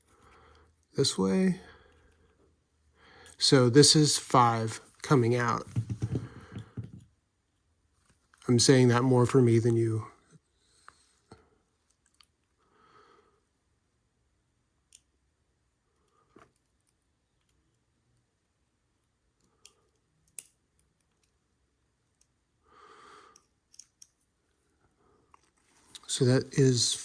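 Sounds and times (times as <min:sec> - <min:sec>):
soft breaths: 0:00.0 - 0:00.9, 0:01.5 - 0:03.6, 0:10.1 - 0:11.8, 0:12.5 - 0:13.6, 0:22.6 - 0:23.6.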